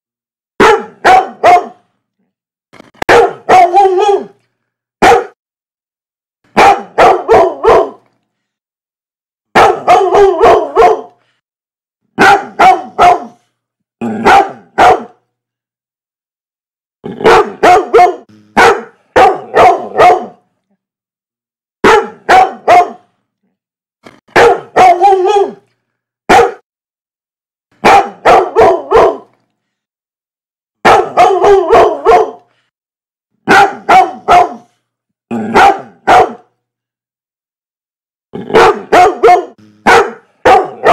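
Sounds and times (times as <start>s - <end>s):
dog barking: 0.6s - 1.9s, 3.1s - 4.4s, 5.0s - 5.4s, 6.5s - 8.0s, 9.5s - 11.2s, 12.2s - 13.4s, 14.2s - 15.2s, 17.2s - 20.4s, 21.8s - 23.1s, 24.3s - 25.6s, 26.3s - 26.6s, 27.8s - 29.3s, 30.8s - 32.5s, 33.4s - 34.8s, 35.4s - 36.5s, 38.4s - 40.9s.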